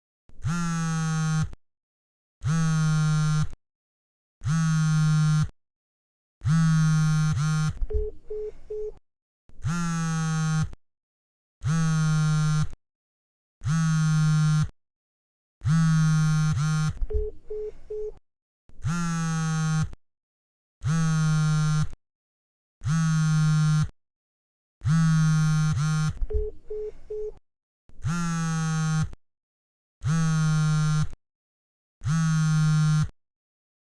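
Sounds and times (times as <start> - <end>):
phone vibrating buzz: 0.3 - 1.6, 2.4 - 3.6, 4.4 - 5.6, 6.4 - 10.8, 11.6 - 12.8, 13.6 - 14.8, 15.6 - 20.0, 20.8 - 22.0, 22.8 - 24.0, 24.8 - 29.2, 30.0 - 31.2, 32.0 - 33.2.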